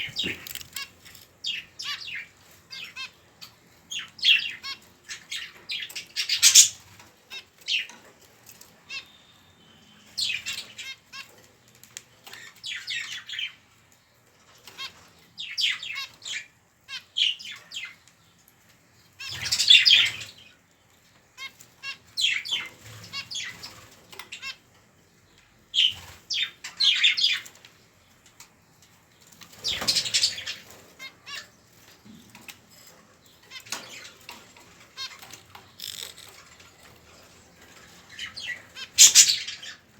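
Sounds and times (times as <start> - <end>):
budgerigar chicks begging calls: 6.2 - 6.8, 38.2 - 39.8.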